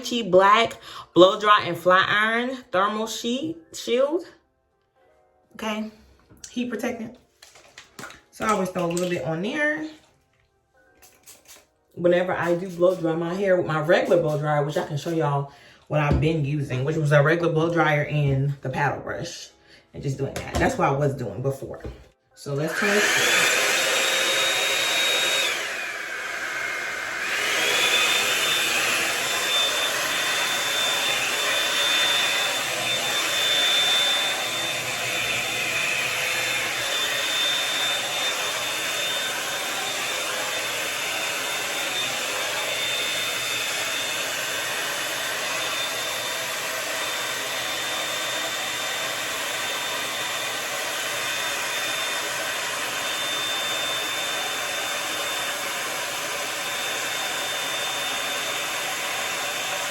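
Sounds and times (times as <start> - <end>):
hot-air brush dryer running: 22.5 - 59.9.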